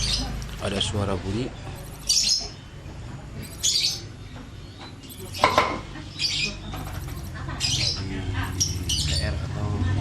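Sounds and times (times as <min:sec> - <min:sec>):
tv making high chirps: 0:03.4 - 0:04.1, 0:04.8 - 0:09.4.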